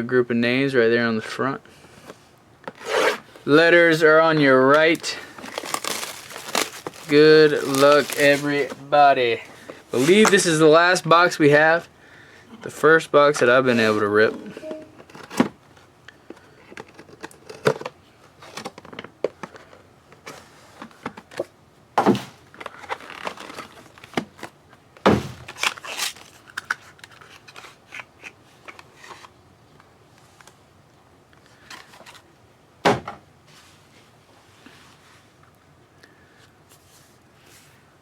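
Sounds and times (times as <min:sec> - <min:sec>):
wrapper crinkling and tearing: 0:04.7 - 0:08.8, 0:22.5 - 0:24.5, 0:25.5 - 0:28.3.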